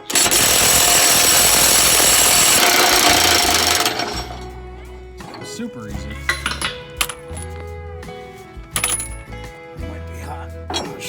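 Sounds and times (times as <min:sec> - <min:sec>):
power tool running on bolt: 0:00.0 - 0:04.7.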